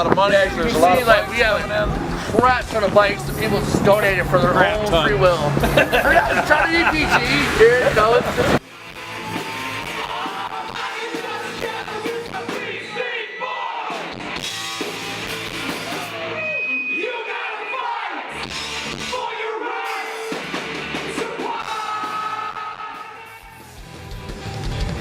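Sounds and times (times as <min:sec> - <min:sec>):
rock song with singing: 0:05.5 - 0:24.9.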